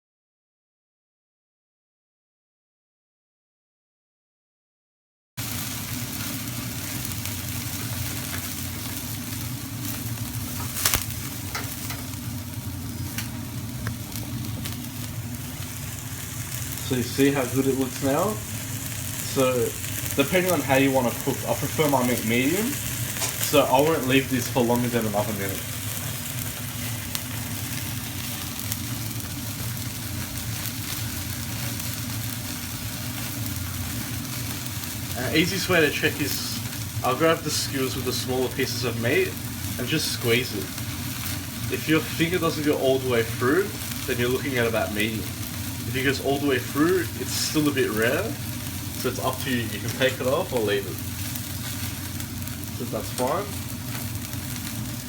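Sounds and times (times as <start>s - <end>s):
low gas rush: 5.4s - 55.0s
meat sizzling on grill: 5.4s - 55.0s
gas burners rushing: 5.9s - 27.5s
fat popping and crackling: 9.9s - 29.8s.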